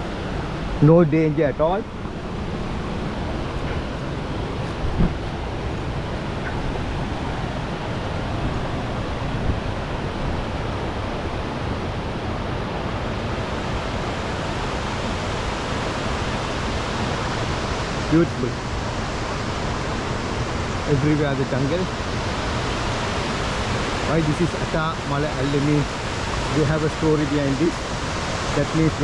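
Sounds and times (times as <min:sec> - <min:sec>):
waterfall rushing: 0:00.0 - 0:29.0
brief knock: 0:04.9 - 0:05.2.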